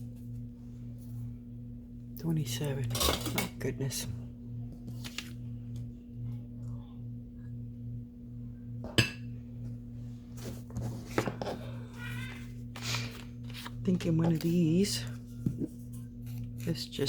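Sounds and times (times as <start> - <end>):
low hum: 0.0 - 17.0
paper rustling: 4.8 - 5.4, 12.8 - 13.8.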